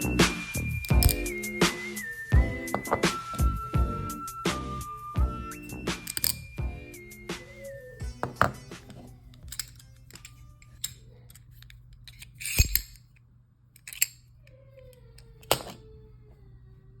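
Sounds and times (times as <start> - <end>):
pocket knives clicking open and shut: 0.6 - 1.4, 6.0 - 6.6, 9.3 - 13.2, 13.8 - 14.3.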